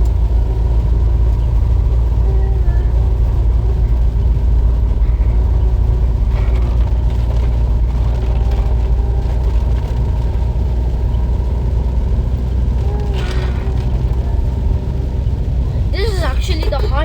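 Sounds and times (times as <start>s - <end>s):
vehicle low rumble: 0.0s - 17.0s
heavy rain: 12.6s - 17.0s.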